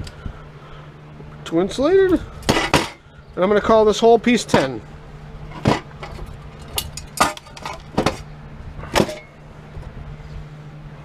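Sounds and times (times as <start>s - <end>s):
steady low hum: 0.0s - 11.0s
metal scrap clinking and clanking: 2.4s - 3.0s, 5.5s - 8.3s, 8.9s - 9.4s.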